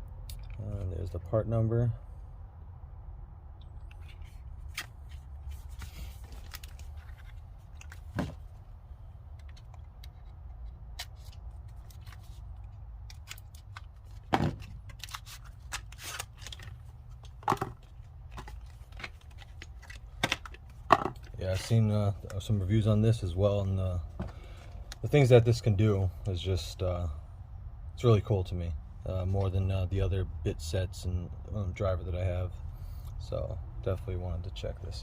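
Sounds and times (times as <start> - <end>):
low steady hum: 0.0 - 35.0
packaging and case clicks and scrapes: 3.9 - 8.5, 9.4 - 21.7.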